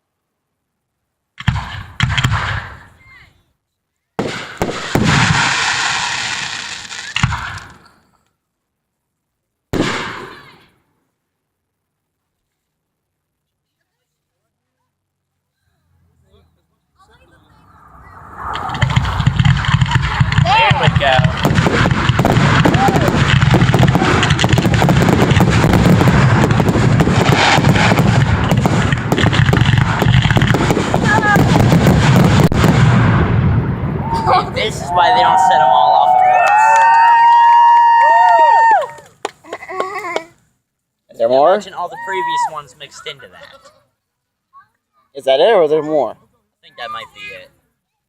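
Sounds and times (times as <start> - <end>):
firework bang: 1.4 - 2.9, 4.2 - 7.8, 9.7 - 10.7, 17.5 - 35.0
fireworks hissing and cracking: 4.2 - 8.1, 17.4 - 32.8.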